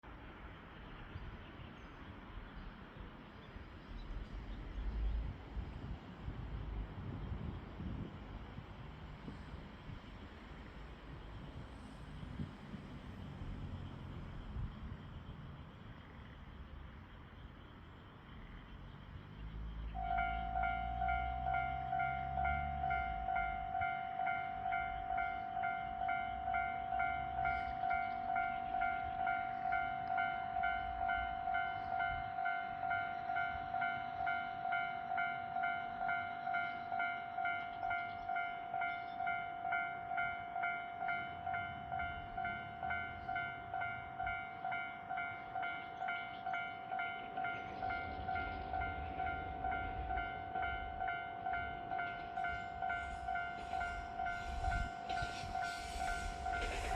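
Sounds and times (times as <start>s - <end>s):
level crossing alarm dinging: 20.0s - 56.9s.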